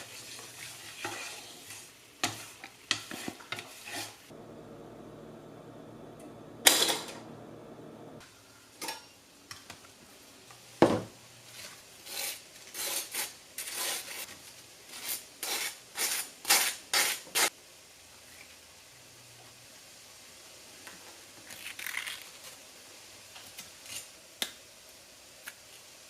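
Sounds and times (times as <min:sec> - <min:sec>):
utensils clanking against cookware: 0:06.6 - 0:07.3.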